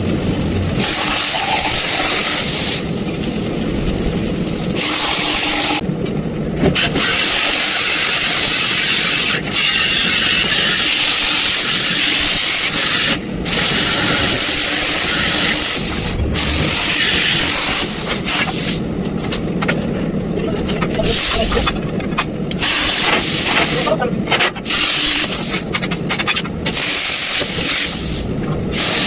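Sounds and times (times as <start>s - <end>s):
low rumble: 0.0s - 5.4s, 14.6s - 22.5s
plasma cutter hissing: 0.0s - 5.8s, 6.8s - 18.8s, 21.0s - 21.8s, 22.5s - 24.0s, 24.6s - 25.7s, 26.7s - 29.0s.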